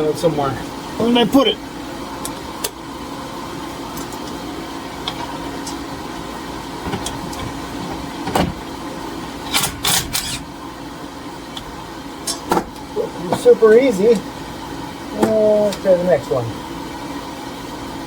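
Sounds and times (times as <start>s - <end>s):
background hum: 0.0s - 18.0s
impact wrench bursts: 9.4s - 10.6s.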